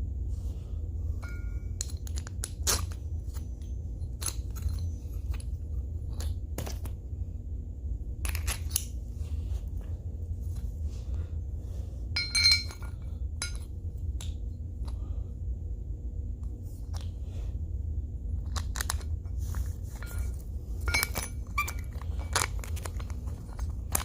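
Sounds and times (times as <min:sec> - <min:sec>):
steady low hum: 0:00.0 - 0:24.0
small metal parts clinking: 0:01.2 - 0:07.0, 0:08.2 - 0:08.9, 0:12.2 - 0:14.4, 0:18.4 - 0:24.0.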